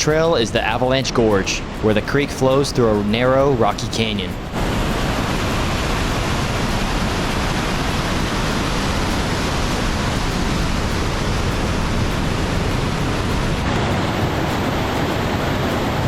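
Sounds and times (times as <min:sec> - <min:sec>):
white water rushing: 0:00.0 - 0:16.0.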